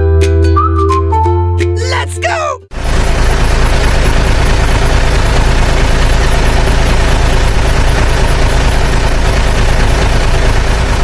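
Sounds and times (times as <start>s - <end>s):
heavy vehicle engine rumble: 2.7s - 11.0s.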